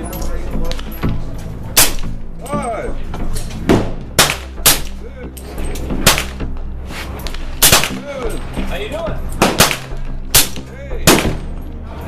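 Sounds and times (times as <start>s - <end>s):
suppressed rifle gunshots: 1.8s - 2.2s, 3.7s - 5.0s, 6.0s - 6.4s, 7.6s - 8.0s, 9.4s - 11.5s.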